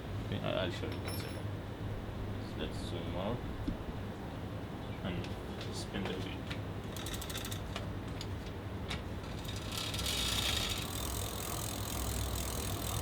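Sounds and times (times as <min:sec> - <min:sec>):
bike wheel ratchet ticks: 0:06.8 - 0:07.8, 0:09.2 - 0:13.0.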